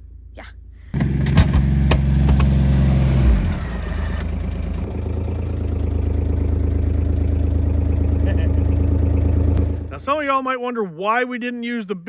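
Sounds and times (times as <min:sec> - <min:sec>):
vehicle engine running: 0:00.9 - 0:10.2.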